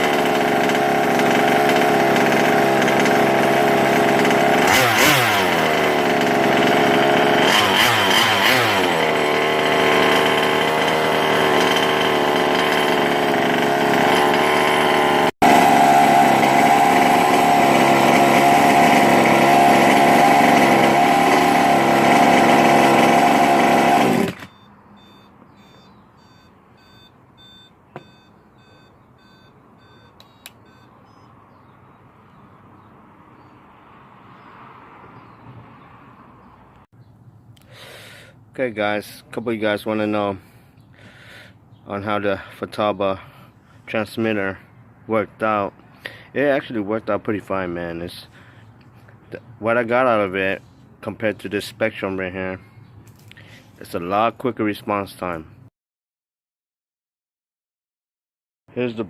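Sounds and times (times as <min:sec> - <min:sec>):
small two-stroke engine revving: 0:00.0 - 0:31.2
short electronic beeps: 0:24.5 - 0:31.4.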